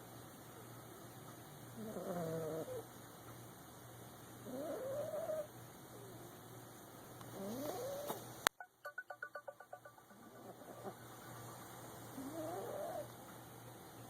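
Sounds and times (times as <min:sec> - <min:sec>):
faint steady hum: 0:00.0 - 0:14.0
puppy snoring with whining notes: 0:01.8 - 0:02.9, 0:04.4 - 0:05.5, 0:07.3 - 0:08.2, 0:12.2 - 0:13.2.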